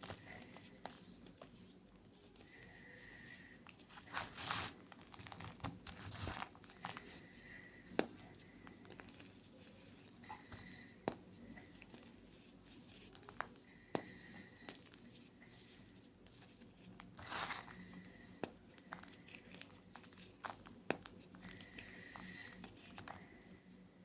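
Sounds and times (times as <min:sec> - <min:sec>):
chalk crunching and crinkling: 0:00.0 - 0:23.6.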